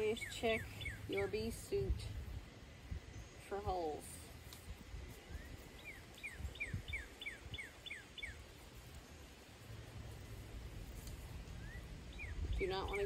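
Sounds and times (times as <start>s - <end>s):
songbird whistling: 5.3s - 8.4s, 11.6s - 13.0s.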